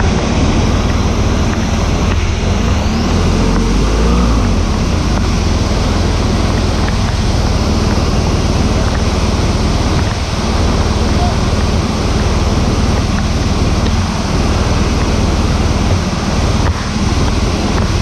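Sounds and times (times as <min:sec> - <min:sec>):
motorcycle engine running: 0:00.0 - 0:18.0
wind rushing over microphone: 0:00.0 - 0:18.0.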